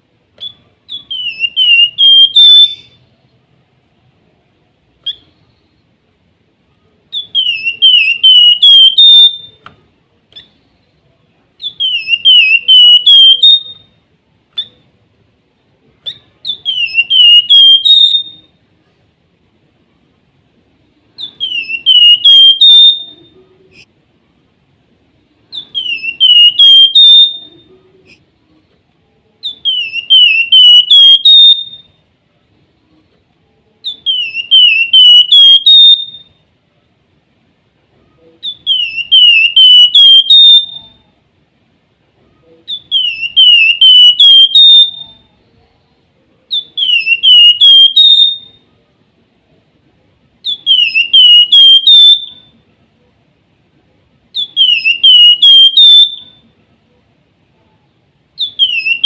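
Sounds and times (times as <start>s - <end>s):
bird whistling song: 0.4s - 3.2s, 5.0s - 5.8s, 7.1s - 9.6s, 11.6s - 14.0s, 16.0s - 18.6s, 21.2s - 23.8s, 25.5s - 28.2s, 29.4s - 32.0s, 33.8s - 36.4s, 38.4s - 41.0s, 42.7s - 45.3s, 46.5s - 48.6s, 50.4s - 52.5s, 54.3s - 56.4s, 58.4s - 59.0s.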